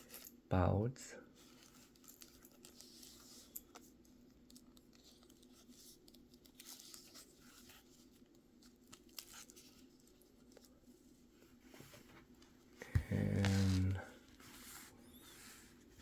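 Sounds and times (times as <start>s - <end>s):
fabric pouch rustling: 13.0s - 16.0s.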